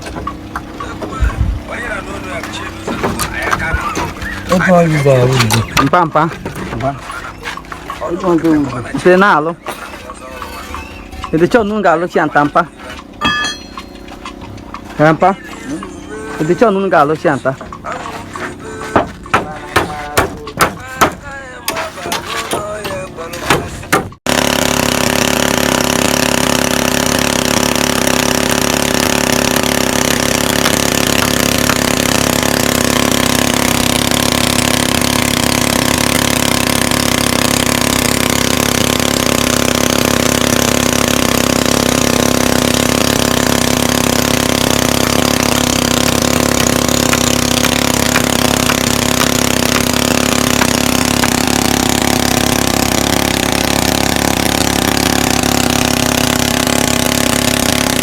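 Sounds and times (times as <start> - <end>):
small engine humming steadily: 0.0 - 21.3, 22.0 - 58.0.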